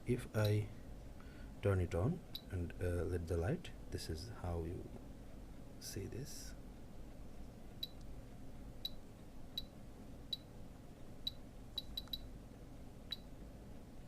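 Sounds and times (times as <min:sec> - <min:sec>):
high key-press beeps: 0:11.3 - 0:12.3.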